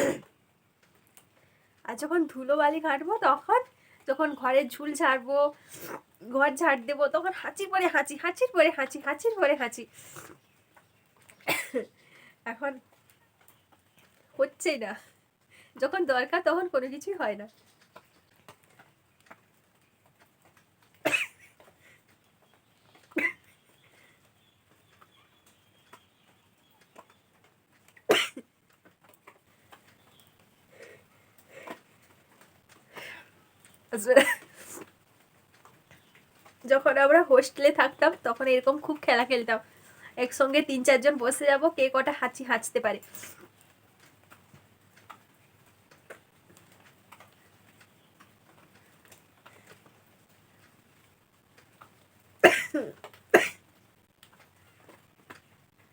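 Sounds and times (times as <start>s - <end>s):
woman sneezing: 0.0s - 0.3s
faint regular ticks: 0.2s - 55.9s.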